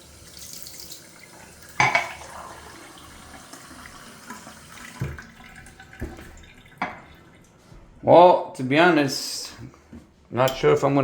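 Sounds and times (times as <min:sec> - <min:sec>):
tap running water: 0:00.0 - 0:07.8.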